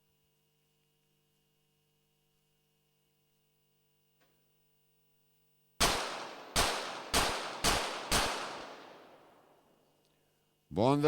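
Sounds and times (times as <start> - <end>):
pistol shots with echo: 5.8 - 9.7.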